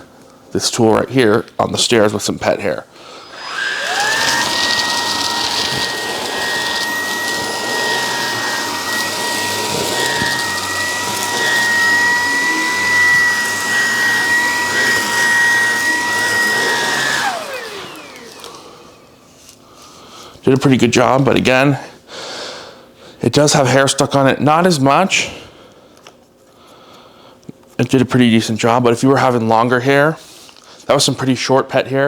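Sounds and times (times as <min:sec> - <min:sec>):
vacuum cleaner motor whining: 0:03.0 - 0:19.9.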